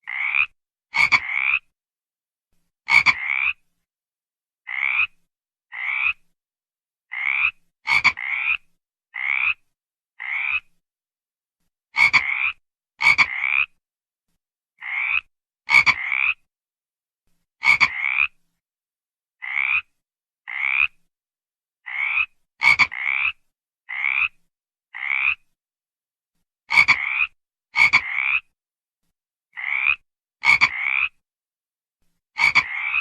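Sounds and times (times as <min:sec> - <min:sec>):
frog croaking: 0:00.0 - 0:01.7, 0:02.9 - 0:03.6, 0:04.7 - 0:06.2, 0:07.1 - 0:09.6, 0:10.2 - 0:10.7, 0:12.0 - 0:13.8, 0:14.8 - 0:16.5, 0:17.6 - 0:18.4, 0:19.4 - 0:19.9, 0:20.5 - 0:21.0, 0:21.8 - 0:25.4, 0:26.7 - 0:28.5, 0:29.5 - 0:31.2, 0:32.4 - 0:33.0.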